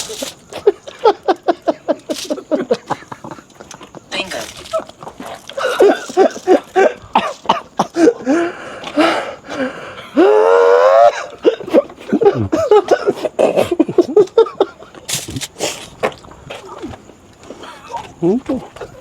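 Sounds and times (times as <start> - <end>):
person coughing: 5.6 - 8.3, 11.2 - 14.0.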